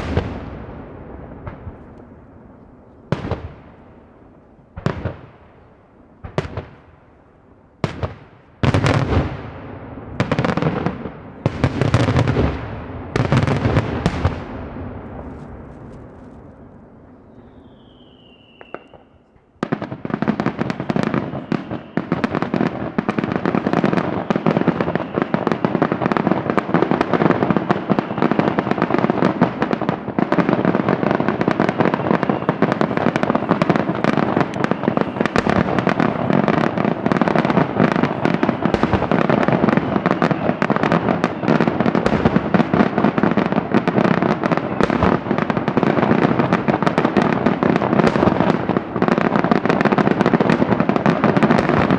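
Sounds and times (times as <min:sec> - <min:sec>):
firecracker bangs and crackles: 0:00.0 - 0:16.7, 0:17.6 - 0:51.9
falling firework whistle: 0:16.5 - 0:29.8, 0:30.6 - 0:46.4.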